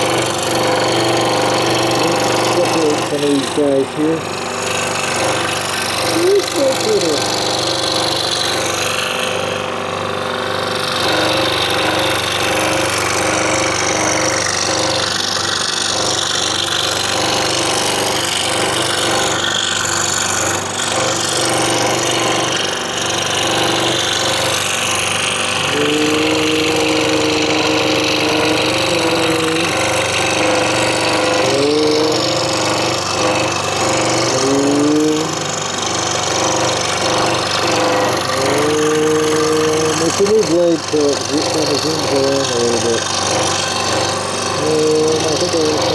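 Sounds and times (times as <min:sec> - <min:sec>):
scroll saw cutting wood: 0:00.0 - 0:45.9
whining tone sliding in pitch: 0:25.6 - 0:35.6, 0:36.7 - 0:45.9.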